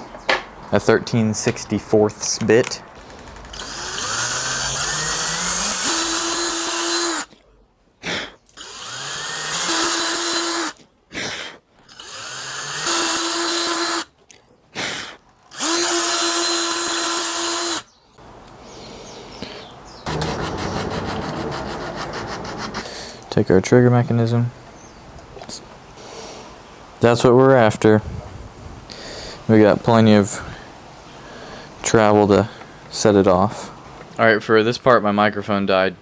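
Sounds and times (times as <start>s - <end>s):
electric drill whining: 3.0s - 7.3s, 8.6s - 10.8s, 15.5s - 17.9s
rhythmic scraping: 20.0s - 23.5s.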